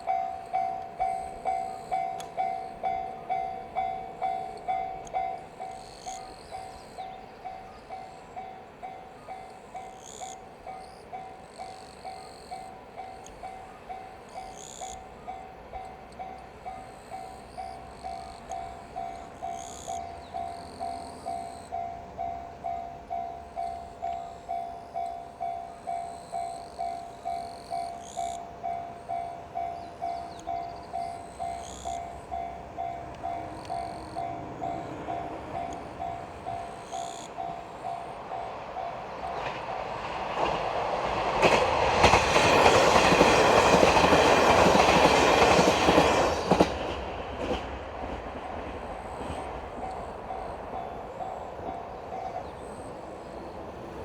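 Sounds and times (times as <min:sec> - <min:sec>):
level-crossing warning bell: 0:00.0 - 0:54.0
train wheels clattering over rails: 0:11.4 - 0:54.0.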